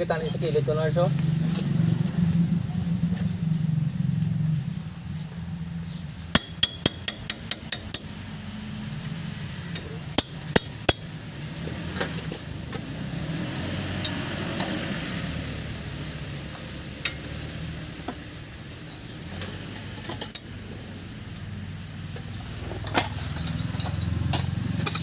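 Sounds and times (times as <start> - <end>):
sharp taps on metal: 6.3 - 8.1.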